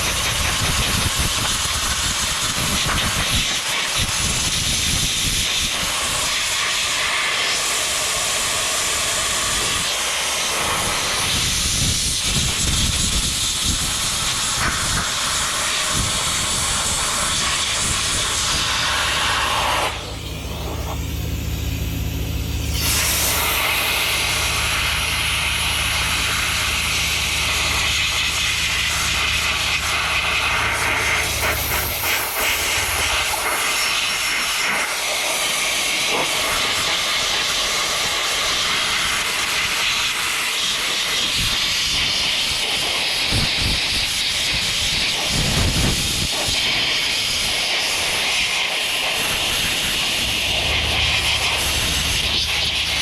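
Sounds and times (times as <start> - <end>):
aerosol cleaner spraying: 0.0 - 22.0, 22.6 - 53.0.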